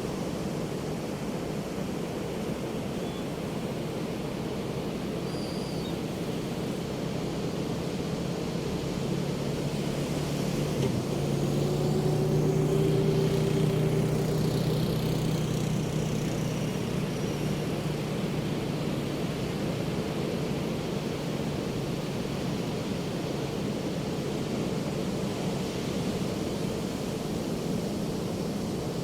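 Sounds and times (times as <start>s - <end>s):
ocean surf washing: 6.0s - 29.0s
passing engine drone: 8.5s - 18.6s.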